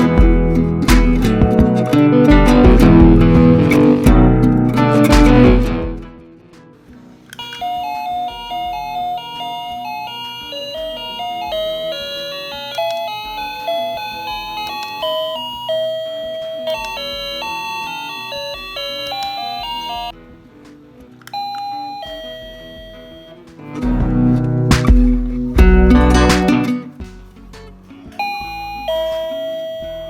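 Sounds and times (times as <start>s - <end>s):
doorbell chime melody: 7.4s - 20.2s, 21.3s - 23.4s, 28.2s - 30.0s.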